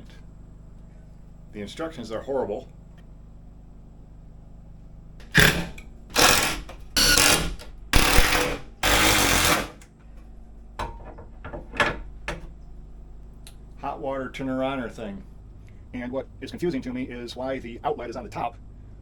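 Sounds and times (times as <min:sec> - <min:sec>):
mechanical tool bursts: 0:05.2 - 0:09.8.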